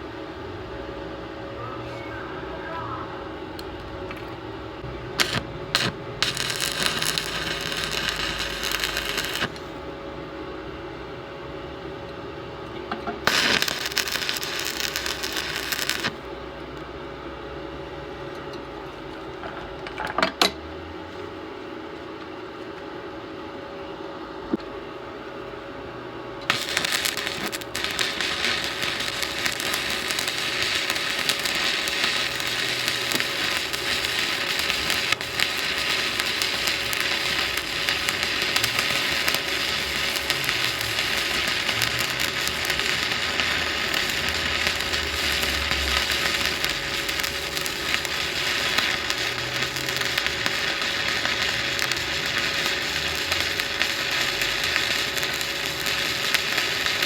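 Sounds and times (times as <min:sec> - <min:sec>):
steady hum: 0:00.0 - 0:57.0
welding arc crackling: 0:05.1 - 0:09.8, 0:13.2 - 0:16.3, 0:26.5 - 0:57.0.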